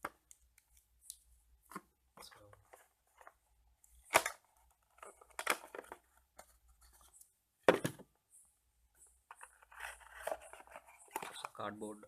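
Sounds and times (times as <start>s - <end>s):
plastic and cardboard rustling: 1.6s - 8.1s, 9.3s - 12.0s.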